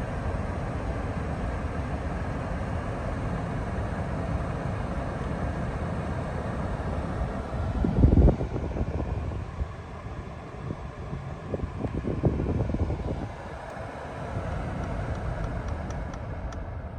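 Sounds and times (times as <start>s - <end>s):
vehicle low rumble: 4.6s - 16.9s.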